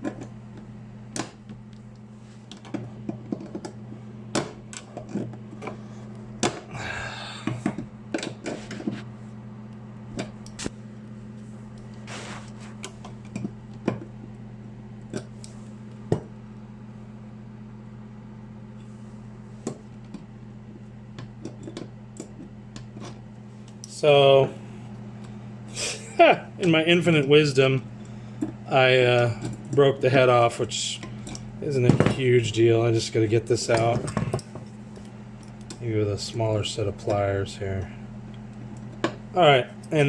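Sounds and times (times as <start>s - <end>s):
low electrical hum: 0.0s - 40.0s
rustling scrape: 12.0s - 12.9s.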